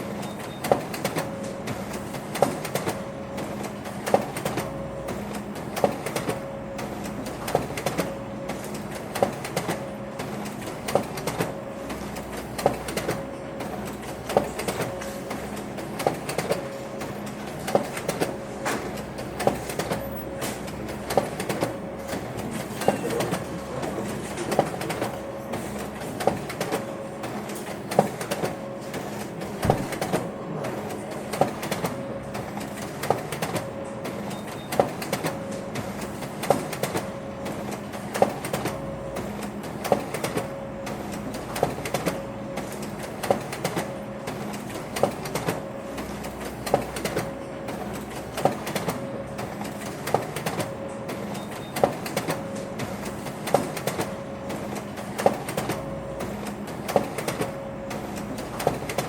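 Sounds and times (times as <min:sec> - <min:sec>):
printer clicking: 0:00.0 - 0:59.0
printer mechanical hum: 0:00.0 - 0:59.0.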